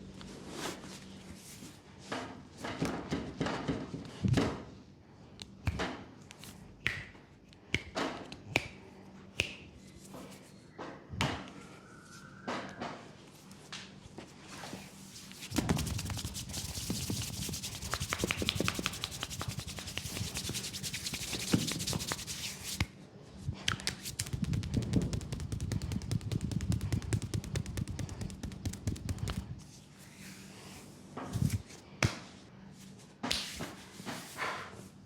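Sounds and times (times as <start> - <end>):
hands rubbing and slapping skin: 5.4 - 10.5, 15.0 - 22.9, 23.5 - 30.1, 33.3 - 34.3.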